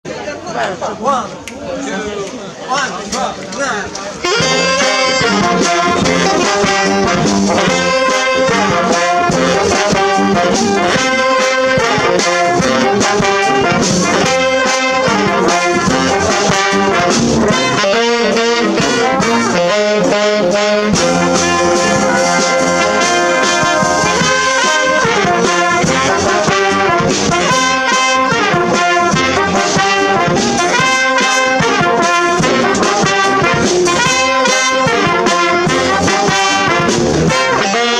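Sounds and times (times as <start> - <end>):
brass band playing: 4.1 - 37.9
count-in: 4.2 - 37.9.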